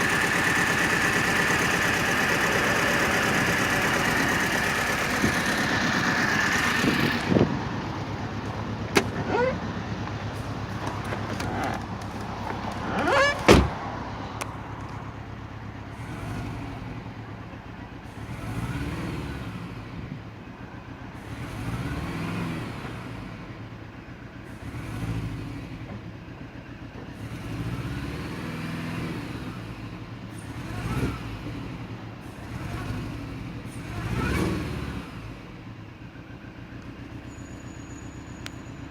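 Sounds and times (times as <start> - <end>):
car engine revving: 0.0 - 14.9, 15.8 - 17.2, 18.0 - 20.0, 27.2 - 35.6.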